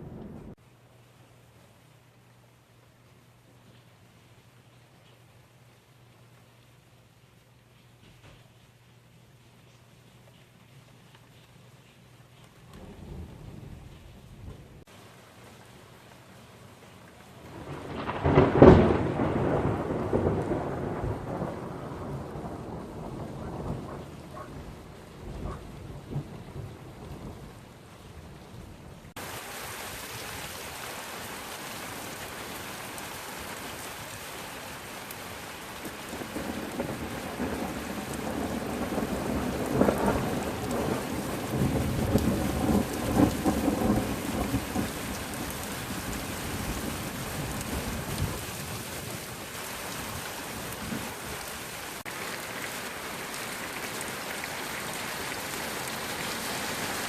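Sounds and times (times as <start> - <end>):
thunder rumbling: 0.0 - 0.6, 12.7 - 14.9, 17.4 - 29.2, 35.9 - 49.6
heavy rain hiss: 0.0 - 57.0.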